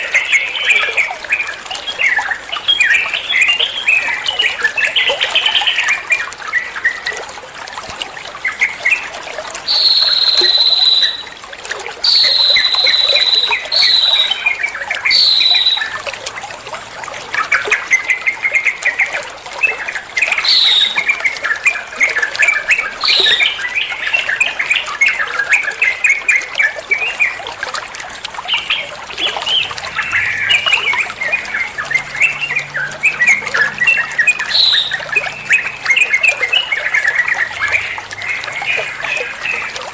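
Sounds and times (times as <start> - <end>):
bird whistled song: 9.7 - 11.4, 12.0 - 16.1, 19.6 - 27.4, 28.5 - 39.8.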